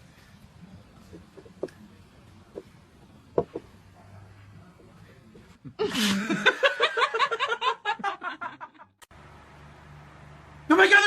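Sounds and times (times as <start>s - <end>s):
person laughing hard: 5.7s - 8.7s.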